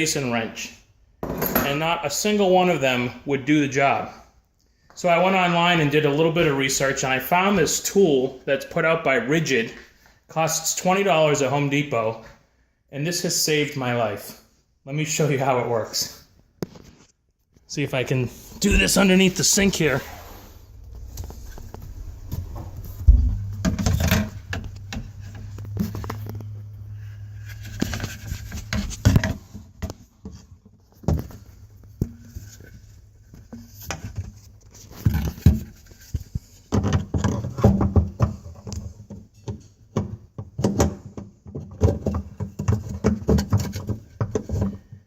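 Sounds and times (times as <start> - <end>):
knocking and clattering in cabinet: 36.7 - 45.0.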